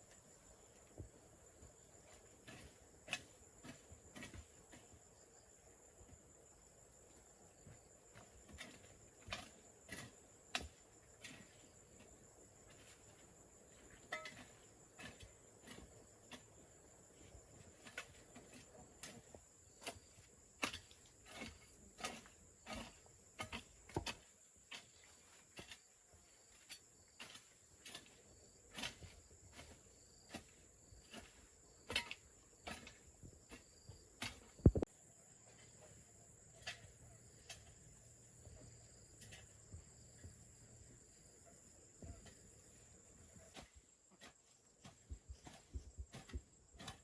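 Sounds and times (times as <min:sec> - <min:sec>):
crickets chirping: 0:00.0 - 0:47.0
knocks of wood and tools: 0:17.8 - 0:24.8, 0:31.9 - 0:34.9, 0:43.5 - 0:47.0.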